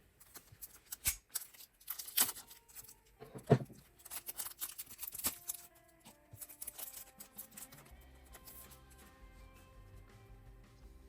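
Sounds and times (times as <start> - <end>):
plastic packaging crinkling: 0.2 - 7.8.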